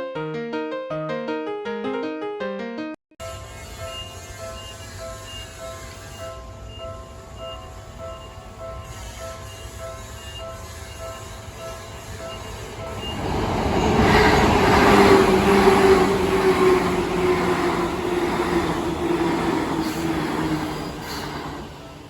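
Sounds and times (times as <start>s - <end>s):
train wheels rumbling: 3.3s - 22.0s
train hum falling in pitch: 10.6s - 22.0s.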